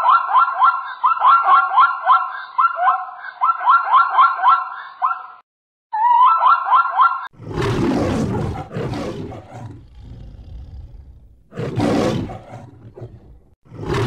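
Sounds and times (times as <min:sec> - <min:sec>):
lion grunting: 0:07.4 - 0:14.0
lion roaring: 0:07.4 - 0:14.0.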